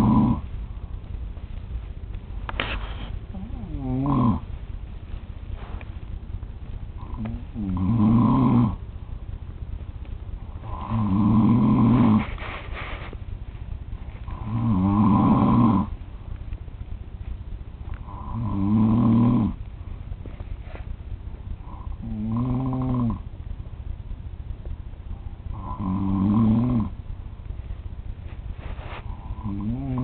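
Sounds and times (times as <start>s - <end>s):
man snoring loudly: 0.0s - 0.4s, 3.3s - 4.4s, 7.0s - 8.8s, 10.6s - 12.3s, 14.3s - 15.9s, 18.0s - 19.6s, 21.6s - 23.2s, 25.5s - 27.0s, 29.1s - 30.0s.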